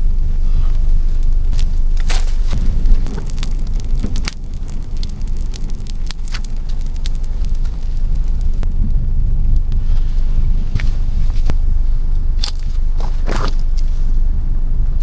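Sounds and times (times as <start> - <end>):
sharp crackles: 0.0 - 14.4
wind buffeting microphone: 0.0 - 15.0.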